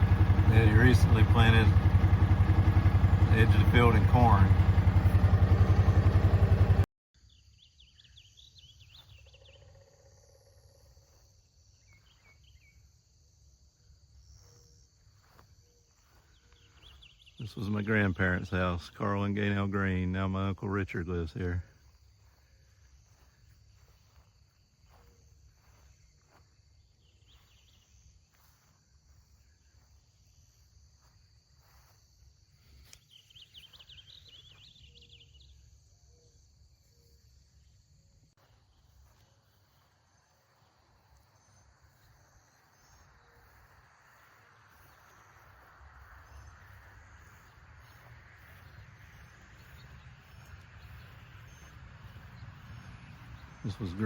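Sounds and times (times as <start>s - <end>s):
high drone of insects: 21.3s - 54.0s.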